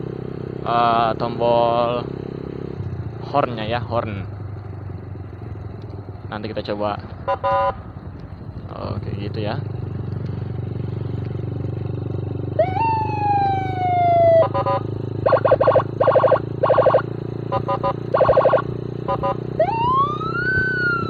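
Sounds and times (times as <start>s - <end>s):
electronic siren wail: 7.3s - 7.8s, 12.6s - 21.0s
buzzy horn blasts: 14.4s - 19.5s.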